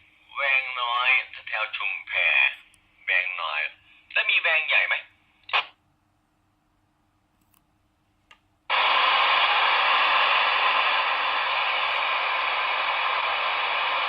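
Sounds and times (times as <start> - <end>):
radio static hiss: 0.2 - 5.8, 8.7 - 14.0.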